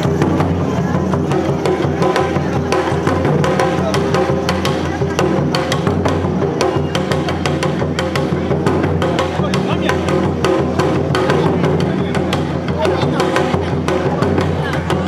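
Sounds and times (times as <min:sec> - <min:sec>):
festival drums beating: 0:00.0 - 0:15.0
bamboo flute melody: 0:06.6 - 0:08.1.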